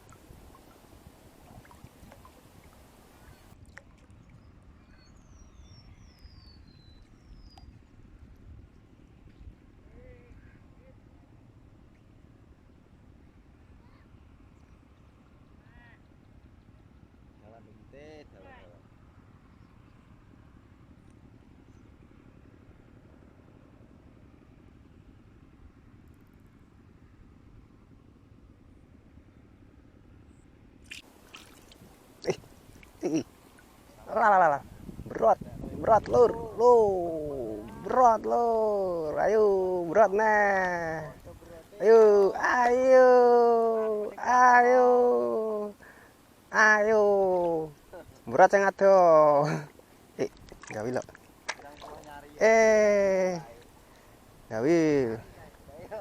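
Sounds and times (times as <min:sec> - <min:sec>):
water sloshing: 0:00.0 - 0:04.5, 0:30.9 - 0:39.2, 0:39.8 - 0:42.8, 0:49.5 - 0:56.0.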